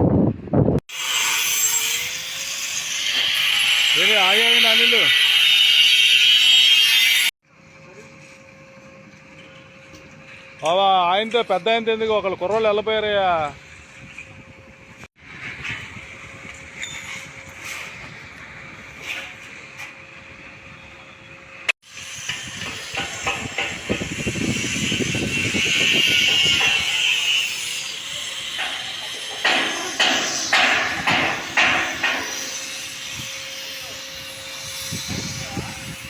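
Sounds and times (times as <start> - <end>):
sharp knocks on metal: 29.4 - 32.3.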